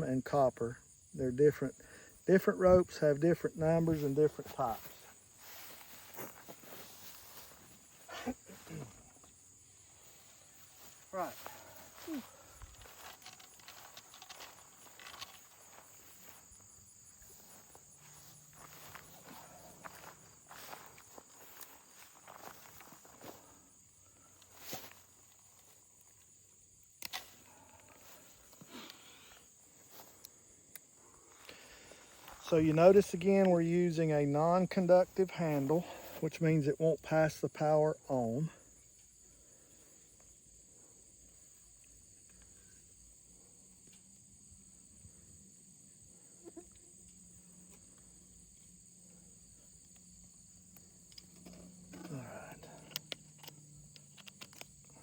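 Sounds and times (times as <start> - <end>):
insects chirring: 0.0 - 55.0
footsteps through grass: 3.6 - 25.7, 32.0 - 32.9
high-pitched insect drone: 4.7 - 25.8.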